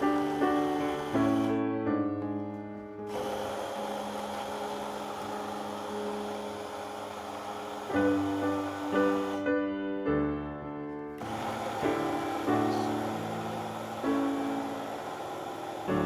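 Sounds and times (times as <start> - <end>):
electric blender running: 0.0 - 9.6, 11.2 - 16.0
soft piano music: 9.4 - 11.2.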